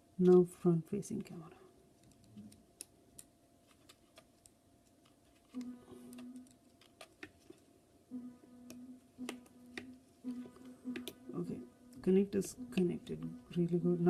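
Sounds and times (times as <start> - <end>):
faint steady low tone: 5.6 - 6.6, 8.1 - 14.0.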